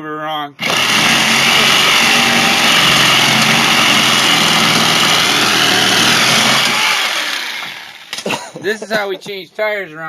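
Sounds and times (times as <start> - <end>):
power tool running: 0.6 - 8.2.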